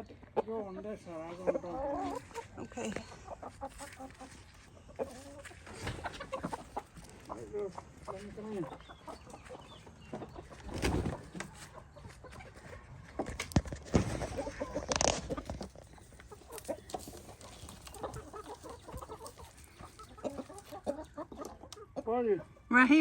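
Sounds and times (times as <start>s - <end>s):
chickens clucking: 0.0s - 23.0s.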